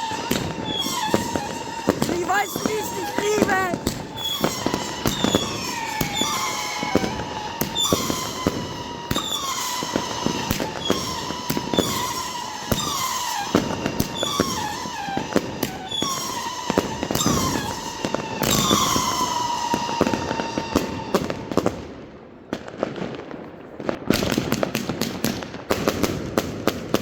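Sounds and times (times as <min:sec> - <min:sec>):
fireworks bangs: 0:00.0 - 0:14.8
fireworks whistling: 0:00.0 - 0:19.9
fireworks crackling: 0:00.4 - 0:12.2.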